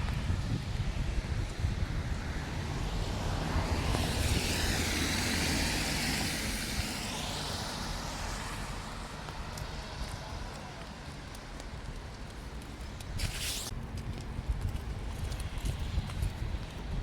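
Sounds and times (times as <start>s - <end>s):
car tyres hissing on wet road: 0.1s - 11.6s, 13.2s - 13.7s.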